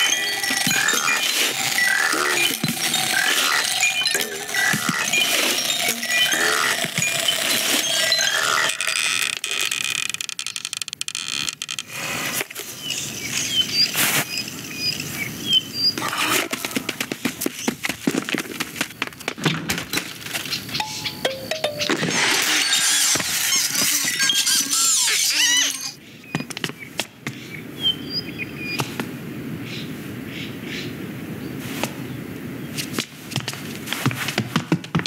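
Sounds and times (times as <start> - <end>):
cartoon squeaks and chirps: 20.7 - 26.0.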